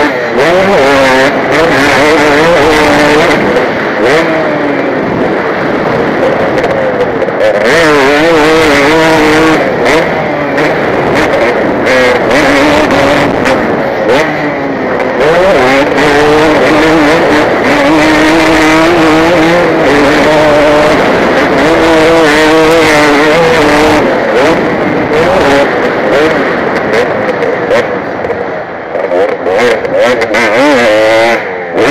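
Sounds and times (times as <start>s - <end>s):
motocross bike engine revving: 0.0s - 31.9s.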